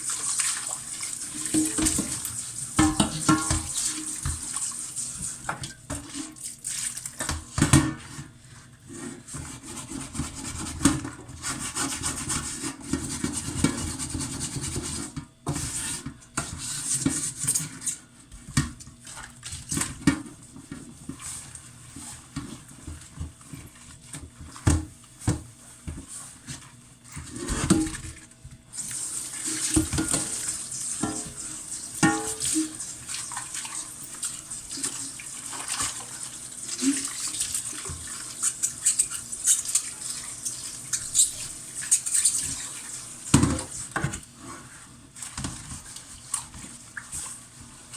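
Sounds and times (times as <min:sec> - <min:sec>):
running tap water: 0:00.0 - 0:07.4, 0:28.8 - 0:44.2
scrubbing pots: 0:00.0 - 0:47.9.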